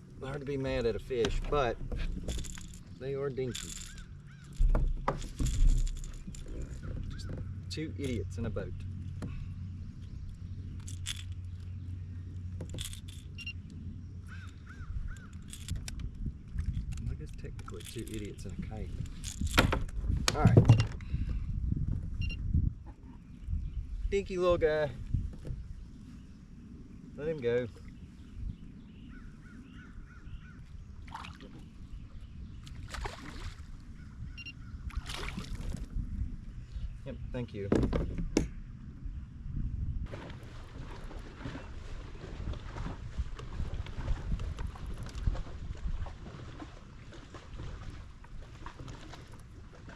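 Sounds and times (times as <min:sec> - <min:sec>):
low rumble of wind and water: 0:00.0 - 0:49.9
fishing gear rattling: 0:00.3 - 0:09.2, 0:10.0 - 0:21.0
bird calling: 0:02.2 - 0:04.8, 0:05.6 - 0:07.7, 0:13.3 - 0:15.6, 0:27.7 - 0:32.8.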